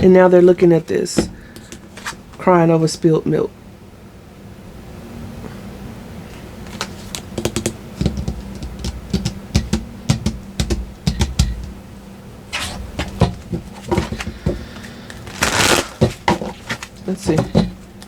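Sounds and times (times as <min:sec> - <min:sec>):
cards clicking and tapping: 0:01.2 - 0:02.2, 0:06.6 - 0:11.8, 0:12.6 - 0:17.8
cards rustling: 0:01.3 - 0:02.3, 0:06.6 - 0:09.4, 0:12.6 - 0:17.8.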